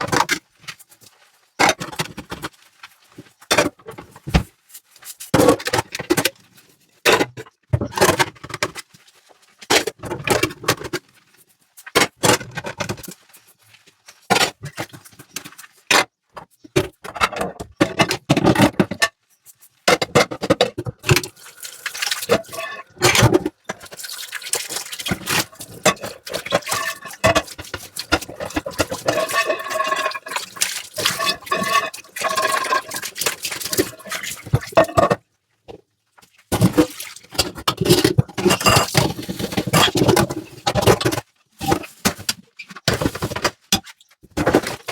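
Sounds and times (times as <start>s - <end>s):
tap water running: 21.0s - 34.8s.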